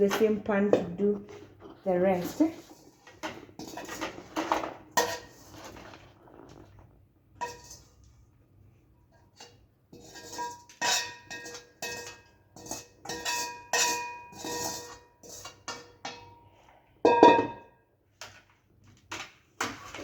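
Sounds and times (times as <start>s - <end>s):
utensil scraping metal wok: 1.3s - 6.5s, 7.4s - 8.1s, 9.3s - 16.5s.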